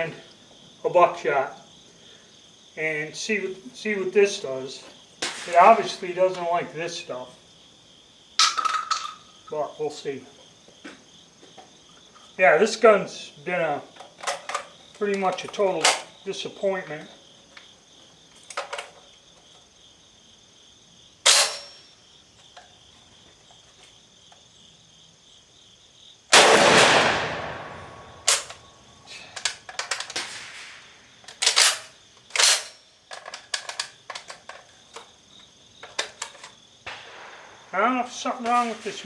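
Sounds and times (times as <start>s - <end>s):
sharp metallic clack: 21.3s - 21.9s
loud shotgun shot: 26.3s - 28.5s, 30.2s - 31.0s, 36.9s - 37.7s.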